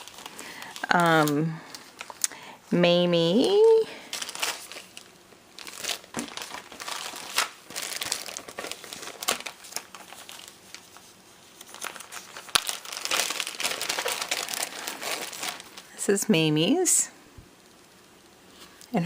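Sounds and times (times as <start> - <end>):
packaging crinkling: 0.0 - 2.5, 3.4 - 16.0.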